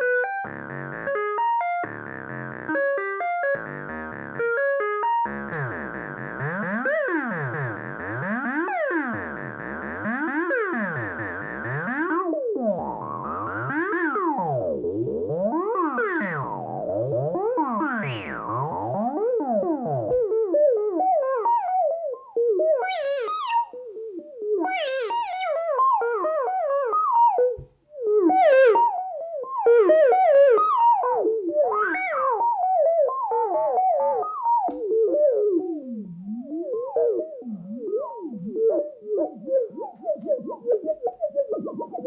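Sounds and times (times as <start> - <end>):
synthesizer sequenced line: 0.0 - 15.4, 16.0 - 19.2, 22.8 - 23.8, 24.8 - 25.7.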